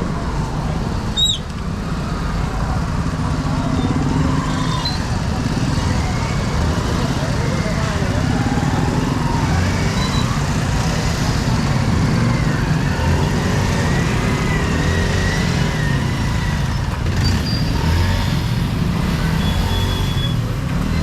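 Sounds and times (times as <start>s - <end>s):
vehicle engines rumbling: 0.0s - 21.0s.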